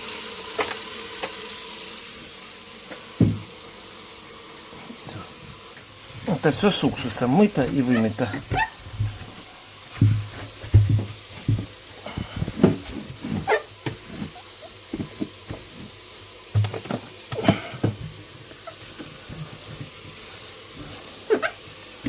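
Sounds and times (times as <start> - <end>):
short squeaks: 7.9 - 8.8
plastic parts knocking: 16.6 - 18.1.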